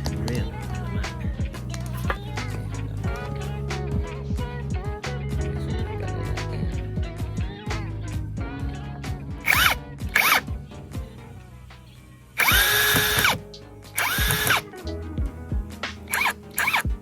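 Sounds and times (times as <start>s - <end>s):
cordless drill whining: 9.4s - 10.4s, 12.4s - 13.4s, 14.0s - 14.6s, 16.1s - 17.0s.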